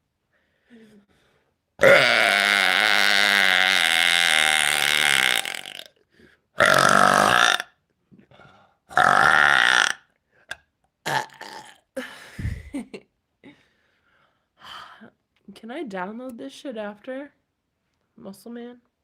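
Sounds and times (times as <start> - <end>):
woman belching loudly: 1.8 - 5.9, 6.6 - 7.7, 8.9 - 10.0, 11.0 - 11.9.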